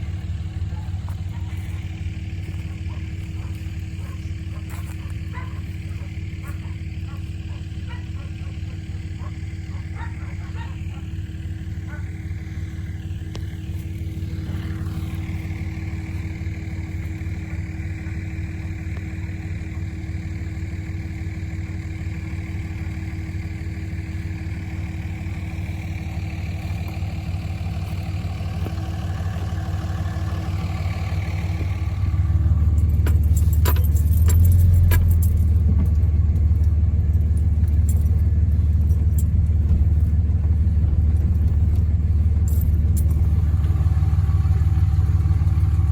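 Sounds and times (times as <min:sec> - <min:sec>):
vehicle running with low hum: 0:00.0 - 0:45.9
clicks and rattles: 0:32.6 - 0:40.2.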